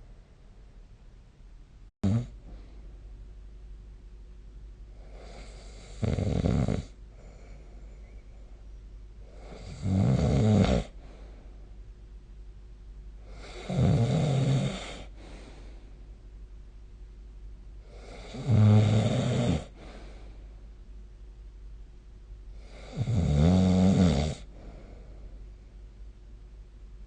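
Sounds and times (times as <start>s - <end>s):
person snoring: 2.0s - 2.4s, 5.1s - 6.9s, 9.4s - 11.0s, 13.3s - 15.2s, 17.9s - 20.1s, 22.6s - 24.5s.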